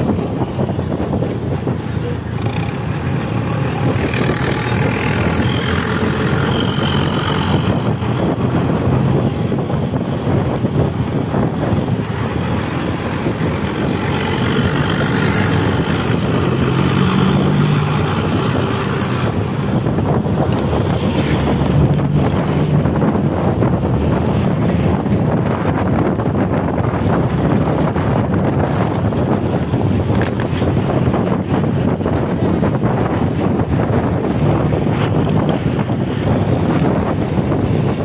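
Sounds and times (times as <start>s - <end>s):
bus diesel engine and exhaust: 0.0s - 38.0s
wind rushing over microphone: 0.0s - 38.0s.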